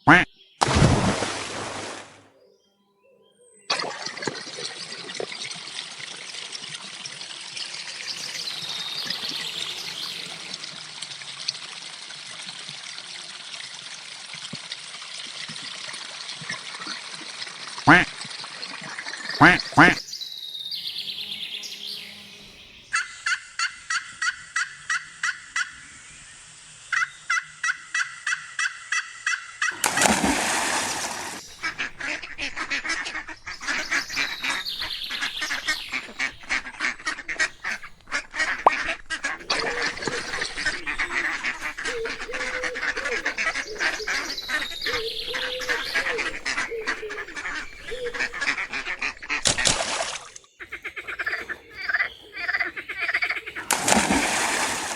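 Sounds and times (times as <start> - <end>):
waterfowl calling: 0.0 - 0.3, 3.8 - 10.9, 17.9 - 18.1, 18.7 - 25.9, 26.9 - 54.9.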